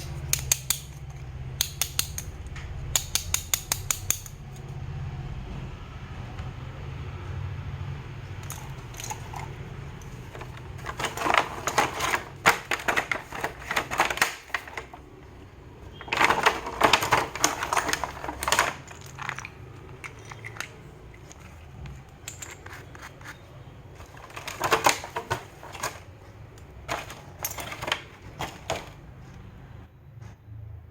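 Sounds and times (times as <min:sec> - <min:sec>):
packaging clicks taps and rustling: 0:08.4 - 0:29.0.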